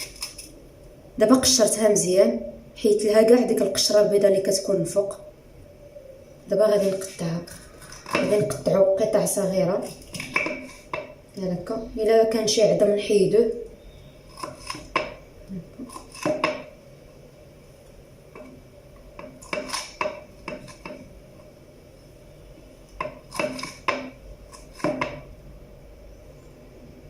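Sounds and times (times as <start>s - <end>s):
knife tapping cutting board: 24.8s - 25.2s.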